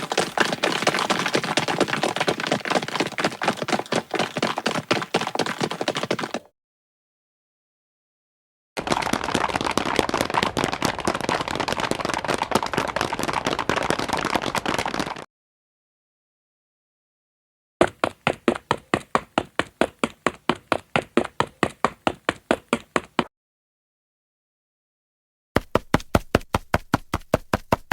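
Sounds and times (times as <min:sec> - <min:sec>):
very fast patter of footsteps: 0:00.0 - 0:06.5, 0:08.8 - 0:15.3, 0:17.8 - 0:23.3, 0:25.6 - 0:27.9.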